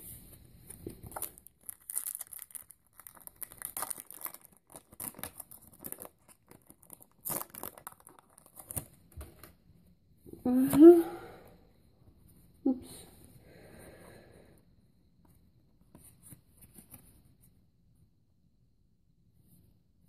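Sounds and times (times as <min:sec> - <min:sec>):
foil wrapper tearing and crinkling: 0:01.0 - 0:09.0.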